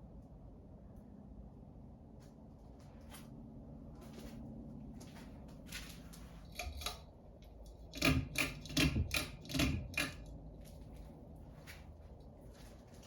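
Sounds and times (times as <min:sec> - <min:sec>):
ceiling fan motor humming: 0:00.0 - 0:13.0.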